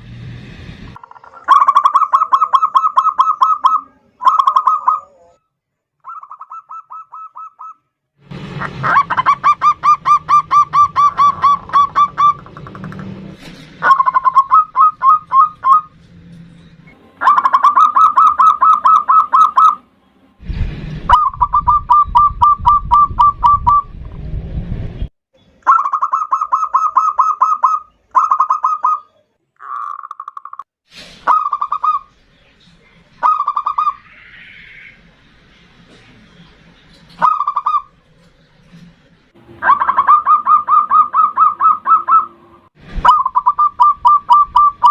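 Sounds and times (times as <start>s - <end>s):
dove cooing: 1.1s - 5.4s, 8.8s - 13.0s, 39.6s - 42.4s.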